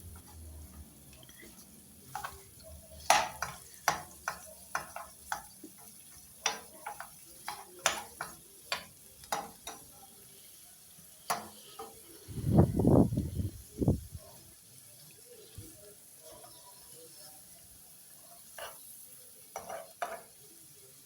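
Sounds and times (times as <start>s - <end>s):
faint sizzle of oil: 0.0s - 21.0s
utensil tapping against pan: 3.0s - 9.9s, 11.3s - 12.0s, 19.6s - 20.3s.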